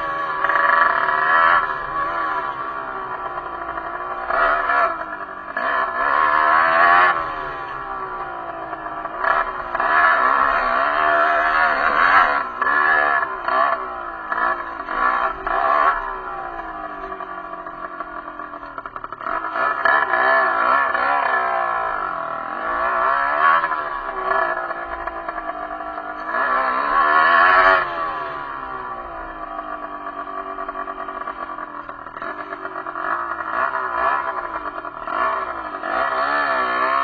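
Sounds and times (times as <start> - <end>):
motorcycle engine revving: 0.0 - 37.0.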